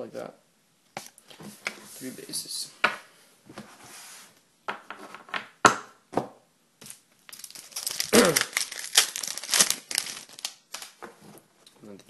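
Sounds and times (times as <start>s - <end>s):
foil wrapper tearing and crinkling: 7.3s - 11.0s.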